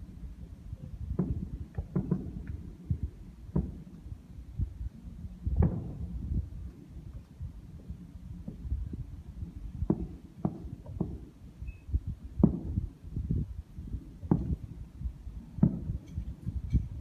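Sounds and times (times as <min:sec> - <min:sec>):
low rumble: 0:00.0 - 0:10.3
fireworks booming: 0:00.0 - 0:11.6, 0:12.2 - 0:17.0.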